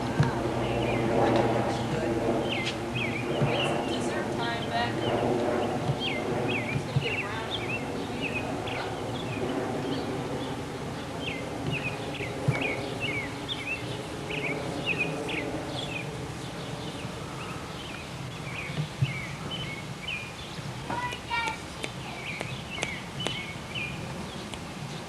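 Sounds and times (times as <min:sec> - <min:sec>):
low background hum: 0:00.0 - 0:25.0
small birds chirping: 0:00.4 - 0:25.0.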